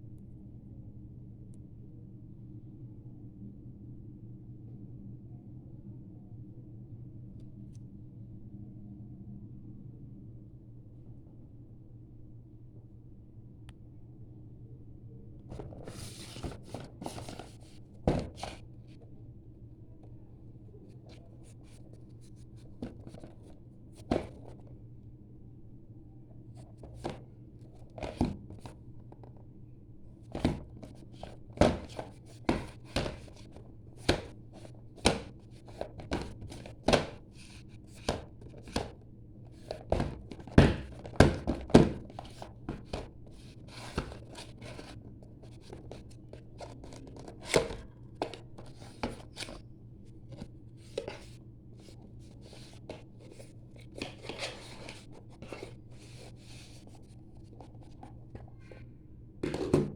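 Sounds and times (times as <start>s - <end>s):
packaging clicks and taps: 30.4s - 37.2s
packaging rustling: 30.4s - 39.0s.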